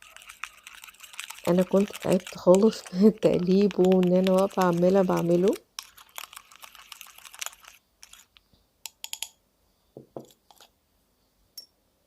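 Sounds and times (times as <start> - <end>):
slime squelching in bowl: 0.0 - 8.4.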